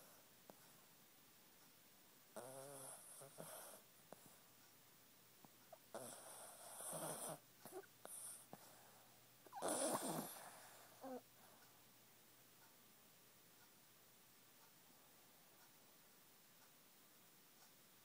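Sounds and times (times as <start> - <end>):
dog snoring: 2.3 - 4.3, 5.8 - 8.8, 9.5 - 11.3.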